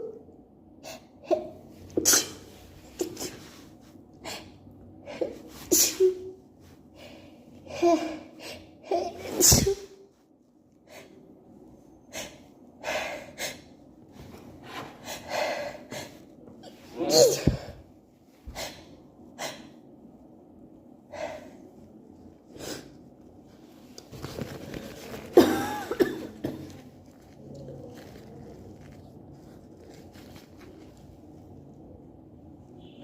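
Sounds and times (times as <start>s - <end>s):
woman sneezing: 9.1s - 10.0s, 16.8s - 17.8s.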